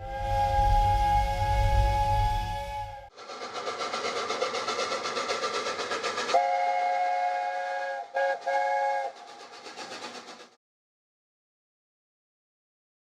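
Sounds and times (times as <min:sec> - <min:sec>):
steam whistle: 0:00.0 - 0:03.2, 0:06.3 - 0:10.3
steam locomotive chuffing: 0:00.0 - 0:10.6.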